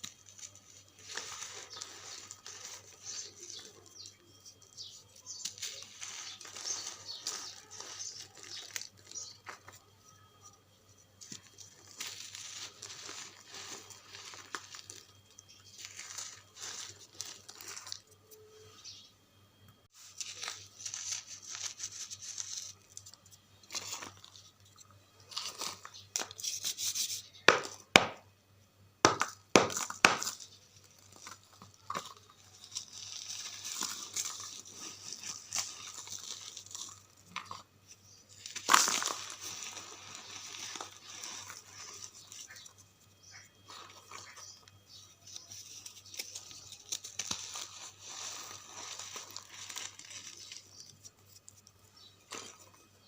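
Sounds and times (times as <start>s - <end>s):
charcoal crunching: 0.0s - 19.1s, 19.9s - 28.3s, 29.0s - 53.0s
charcoal snapping: 29.0s - 37.6s, 38.3s - 42.7s, 44.2s - 51.0s.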